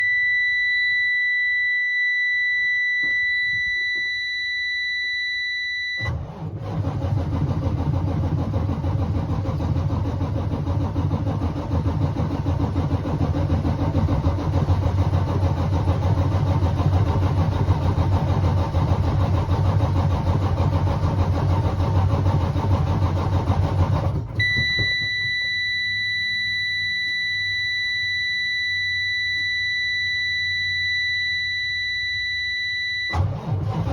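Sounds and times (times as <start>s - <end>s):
high-pitched warning buzzer: 0.0s - 6.1s, 24.4s - 33.2s
diesel engine cranking: 6.0s - 25.5s, 33.1s - 33.9s.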